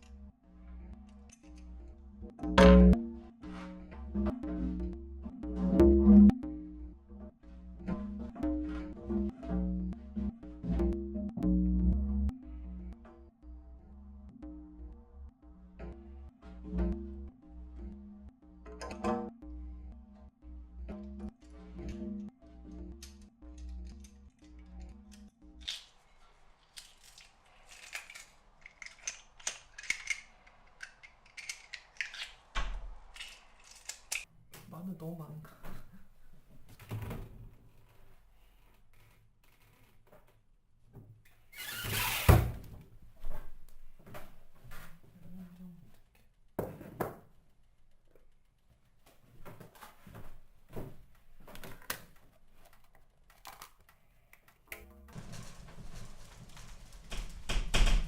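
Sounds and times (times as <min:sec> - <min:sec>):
utensils clicking and scraping: 0:22.9 - 0:32.5, 0:33.1 - 0:34.3.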